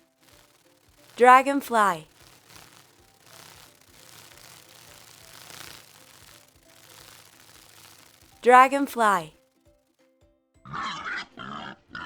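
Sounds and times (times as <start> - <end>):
dragonfly wings whirring: 0.0 - 9.3.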